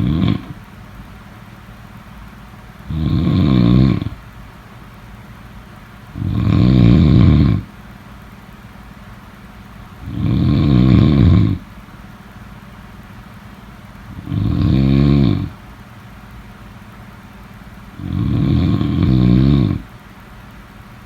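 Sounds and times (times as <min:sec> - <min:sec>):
loud snoring: 0:00.0 - 0:00.6, 0:02.9 - 0:04.2, 0:06.1 - 0:07.7, 0:10.0 - 0:11.7, 0:14.1 - 0:15.6, 0:18.0 - 0:19.9.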